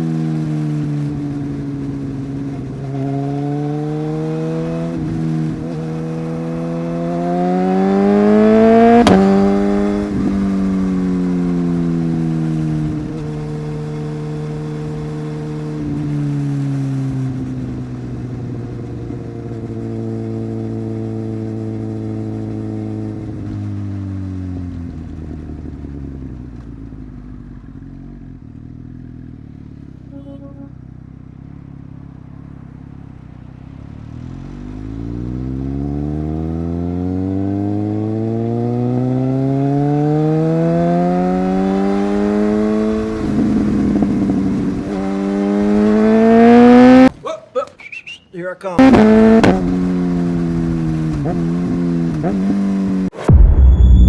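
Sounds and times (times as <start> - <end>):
motorbike engine revving: 3.3 - 16.0, 35.8 - 47.1, 48.8 - 54.0.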